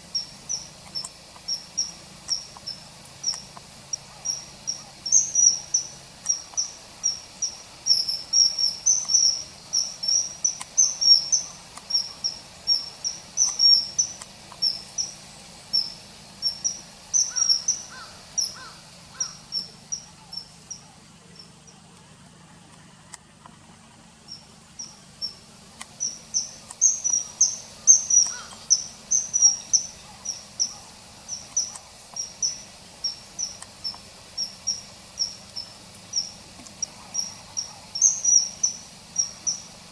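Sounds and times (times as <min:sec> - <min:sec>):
kingfisher whistling calls: 0:00.0 - 0:21.5, 0:24.3 - 0:39.9.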